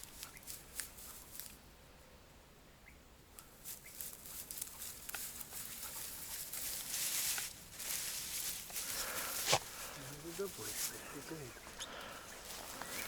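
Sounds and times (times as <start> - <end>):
footsteps through grass: 0.0 - 1.6, 3.5 - 13.0
snaps and crackles of stems: 0.0 - 1.6, 3.4 - 5.6.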